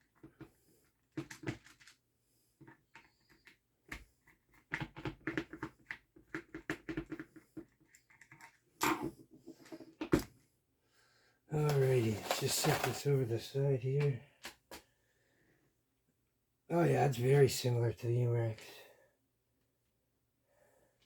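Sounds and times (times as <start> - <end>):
clicks and taps of plastic parts: 1.1 - 2.0, 2.6 - 8.6
parts clattering: 11.6 - 13.2.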